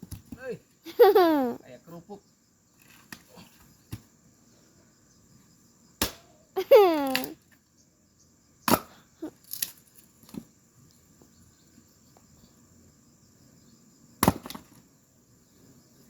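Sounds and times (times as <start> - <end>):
firewood being chopped and split: 0.0 - 0.6, 2.8 - 4.2, 6.0 - 6.3, 8.6 - 10.5, 14.2 - 14.9.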